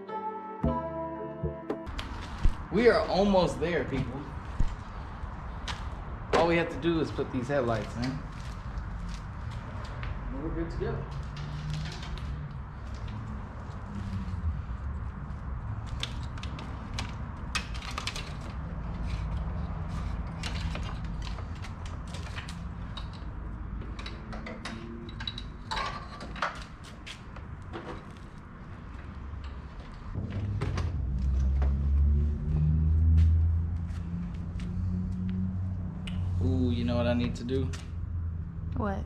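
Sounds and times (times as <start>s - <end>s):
car parts clicking and rattling: 1.9s - 10.2s, 11.1s - 31.8s.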